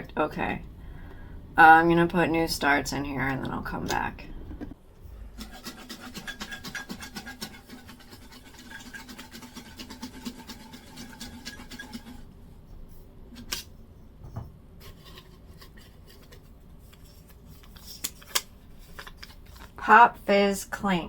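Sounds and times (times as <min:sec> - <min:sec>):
paper rattling in a shaker: 0:05.4 - 0:12.3, 0:14.8 - 0:19.8.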